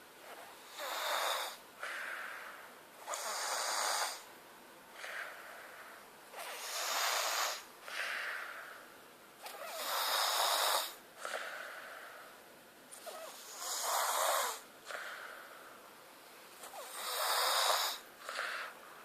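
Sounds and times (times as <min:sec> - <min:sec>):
rhythmic snoring: 0:00.2 - 0:02.2, 0:03.0 - 0:04.3, 0:06.3 - 0:08.5, 0:09.4 - 0:11.9, 0:12.9 - 0:15.4, 0:16.6 - 0:18.8.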